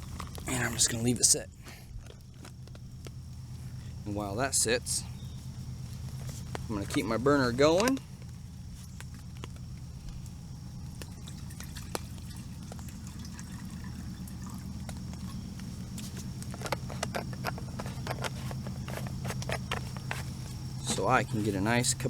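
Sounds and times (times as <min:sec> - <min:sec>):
alcohol burner running: 0:00.0 - 0:22.0
water drips and ticks: 0:06.1 - 0:18.2.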